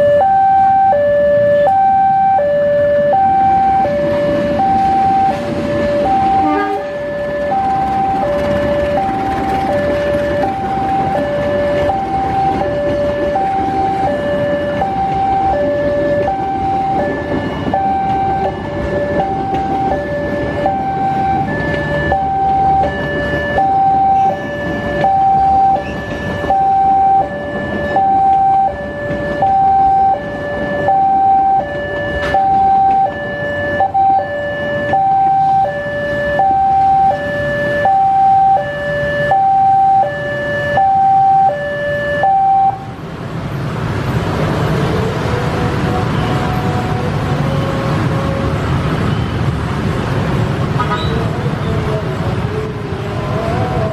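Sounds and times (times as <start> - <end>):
level crossing alarm two-note tone: 33.8 - 42.8.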